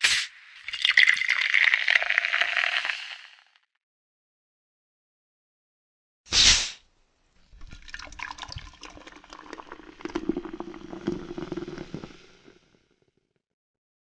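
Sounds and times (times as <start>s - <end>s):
soda can opening hiss: 0.0s - 0.4s, 6.3s - 6.8s
cola pouring and fizzing: 0.5s - 3.5s, 7.4s - 13.1s.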